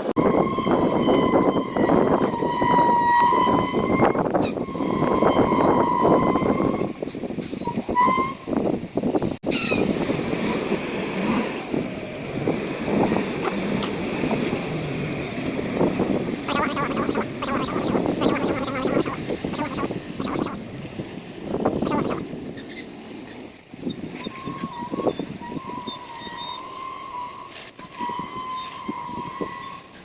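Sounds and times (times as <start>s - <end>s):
engine and traffic rumble: 0.0s - 30.0s.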